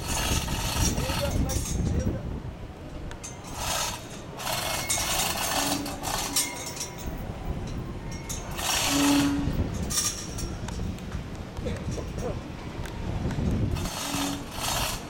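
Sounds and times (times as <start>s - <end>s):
metal parts clinking and scraping: 0.0s - 2.1s, 3.2s - 10.9s, 13.7s - 15.0s.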